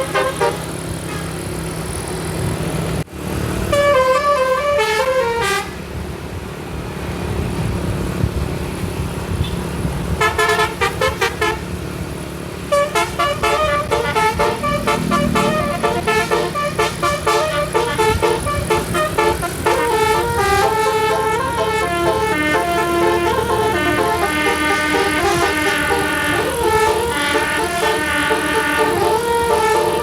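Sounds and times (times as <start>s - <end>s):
bus musical horn tunes: 0.0s - 1.7s, 3.6s - 5.9s, 9.4s - 12.0s, 12.6s - 30.0s
engine and road rumble: 0.0s - 30.0s.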